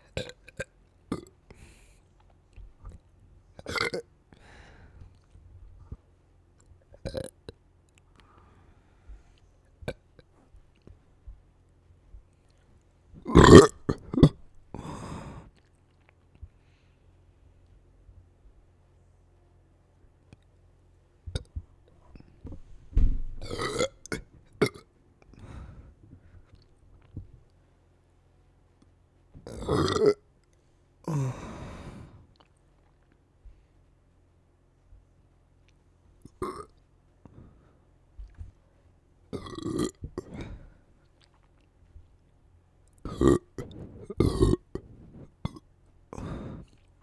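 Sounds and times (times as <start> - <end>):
person belching: 3.7 - 4.0, 13.3 - 14.9, 23.4 - 24.8, 29.5 - 30.2, 36.4 - 36.7, 39.4 - 40.4, 43.1 - 44.9
soft breathy sound: 31.1 - 32.4, 40.1 - 41.0, 43.5 - 47.0.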